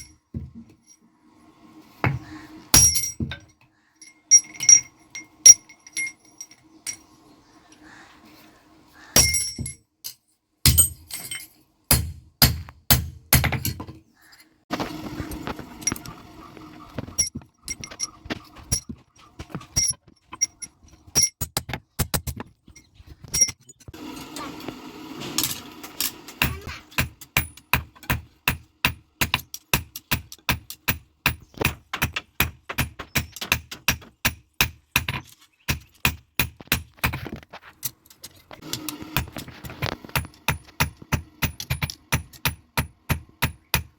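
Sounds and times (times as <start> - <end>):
hammer striking iron on anvil: 2.7 - 3.5, 9.2 - 9.8, 10.6 - 13.8, 26.4 - 35.1, 40.2 - 43.9.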